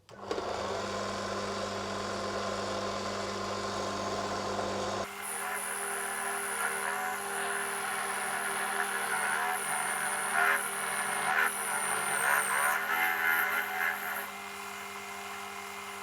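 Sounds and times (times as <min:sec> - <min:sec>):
metal lathe cutting brass: 0:05.1 - 0:16.0.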